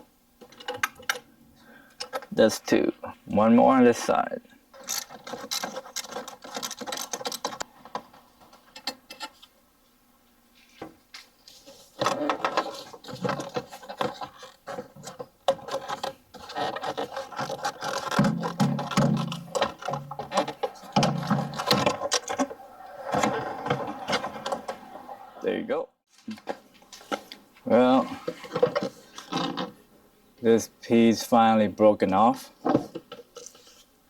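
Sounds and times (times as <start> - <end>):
hard plastic clicking and rattling: 4.8 - 9.4.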